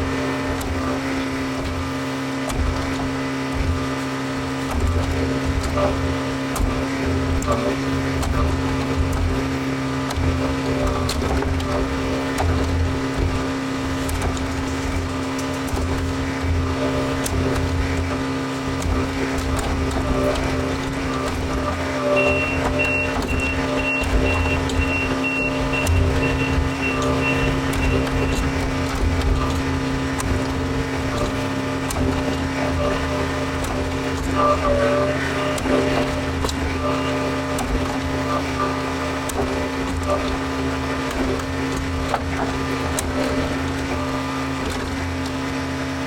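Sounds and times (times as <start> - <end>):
diesel engine running: 0.0 - 46.0
backup alarm beeping: 22.1 - 28.5.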